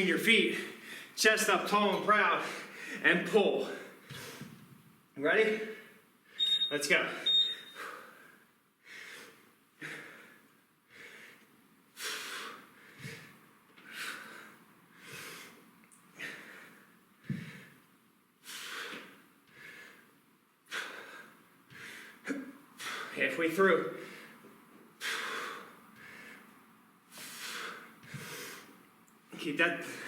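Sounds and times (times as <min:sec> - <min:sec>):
man breathing hard: 0:00.5 - 0:01.2, 0:02.4 - 0:04.7, 0:07.6 - 0:23.2, 0:23.9 - 0:28.9, 0:29.8 - 0:30.0
soft low thumps: 0:17.2 - 0:17.6.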